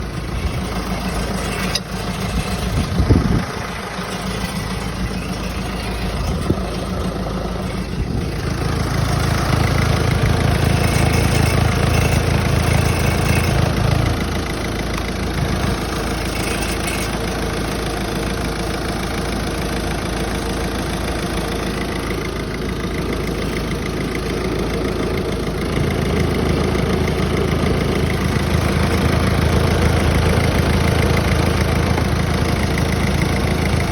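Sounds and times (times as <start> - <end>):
metallic rattle: 0.0 - 19.6
car engine idling: 0.0 - 33.9.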